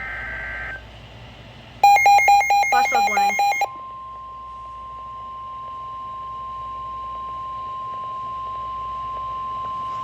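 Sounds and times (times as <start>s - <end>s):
steady high alarm beep: 1.8s - 3.7s.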